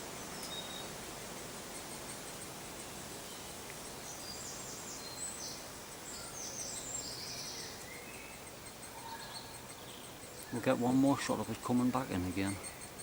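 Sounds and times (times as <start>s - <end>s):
steady background hiss: 0.0s - 13.0s
woodpecker nestlings begging calls: 4.2s - 13.0s.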